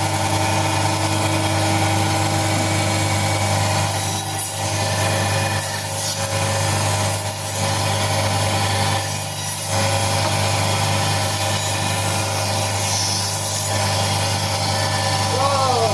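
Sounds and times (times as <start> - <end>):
electric cutting machine humming: 0.0 - 15.9.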